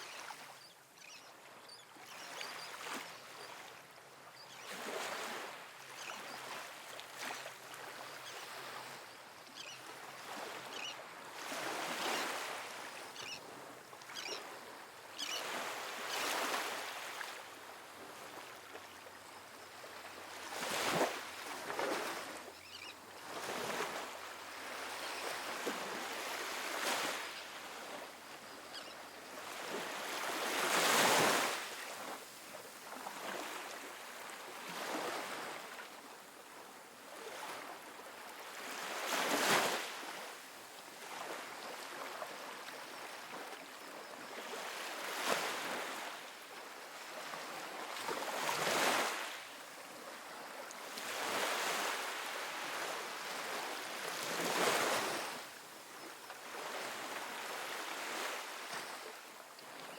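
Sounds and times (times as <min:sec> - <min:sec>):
ocean waves breaking on beach: 0:19.6 - 0:59.9.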